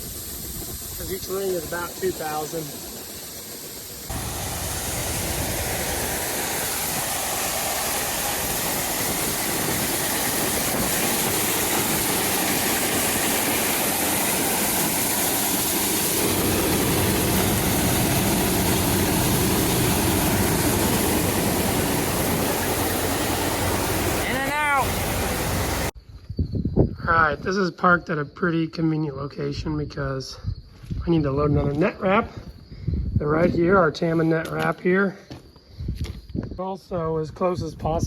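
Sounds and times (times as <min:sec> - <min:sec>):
heavy diesel engine running: 0:04.1 - 0:25.9.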